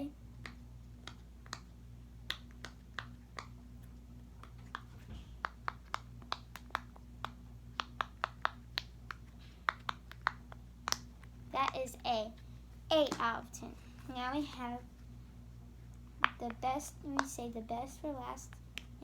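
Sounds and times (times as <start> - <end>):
fidget toy bubbles popping: 16.2 - 16.6.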